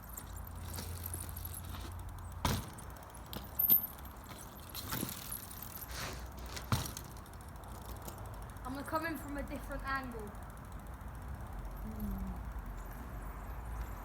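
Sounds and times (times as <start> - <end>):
mountain bike rattling and clanking: 0.0 - 14.0.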